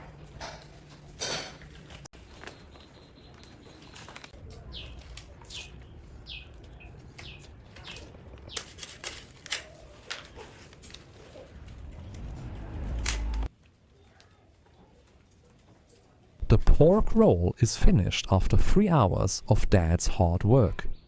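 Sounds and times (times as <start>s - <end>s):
small bird chirping: 2.2s - 8.7s.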